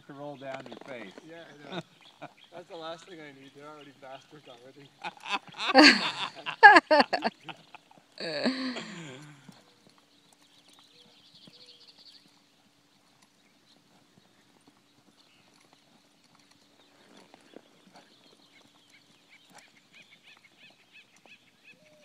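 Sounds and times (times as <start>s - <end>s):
horse hoofbeats: 0.0s - 22.0s
low steady hum: 0.0s - 22.0s.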